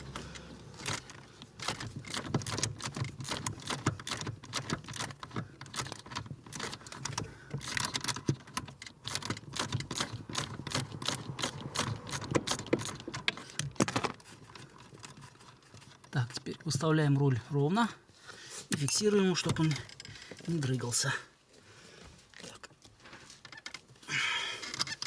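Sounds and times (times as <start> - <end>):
ratchet wrench clicking: 0.8 - 13.5.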